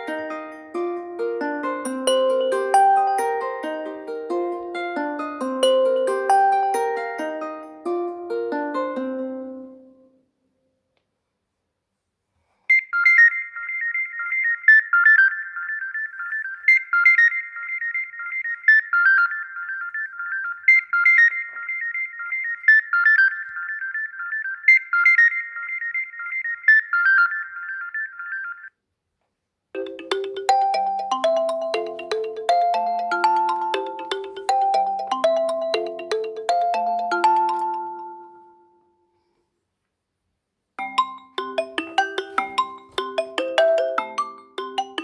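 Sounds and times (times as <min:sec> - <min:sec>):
phone ringtone melody: 0:00.0 - 0:09.5, 0:29.8 - 0:39.0, 0:40.8 - 0:45.0
lower ringtone tune: 0:00.0 - 0:09.9, 0:29.8 - 0:39.0, 0:40.8 - 0:45.0.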